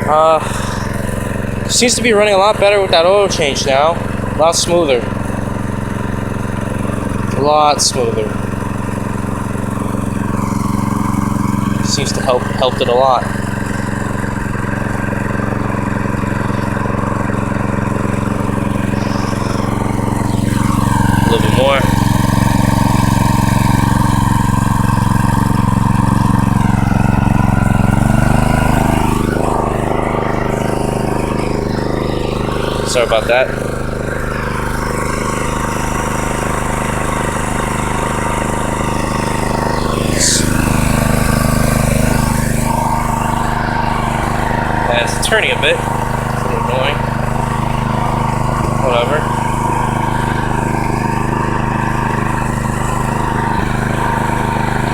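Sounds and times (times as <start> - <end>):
small engine running: 0.0 - 54.9.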